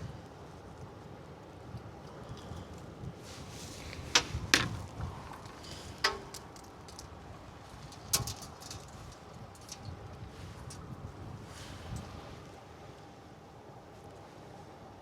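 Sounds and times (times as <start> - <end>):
wind rumble on microphone: 0.0 - 15.0
knocks and clicks of objects handled: 3.9 - 7.1.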